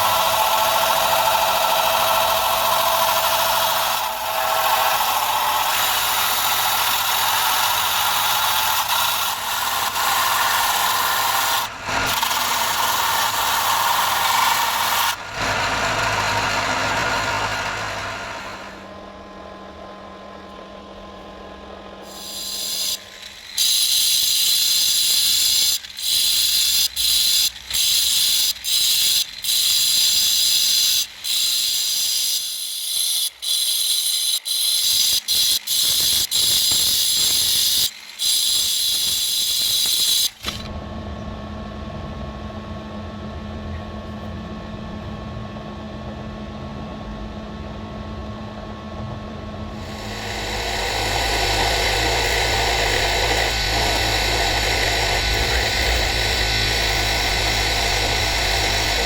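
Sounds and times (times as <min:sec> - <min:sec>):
polishing wheel motor humming: 0:00.0 - 0:19.0, 0:49.6 - 0:59.0
stone grinding on wheel: 0:22.1 - 0:40.7, 0:49.8 - 0:59.0.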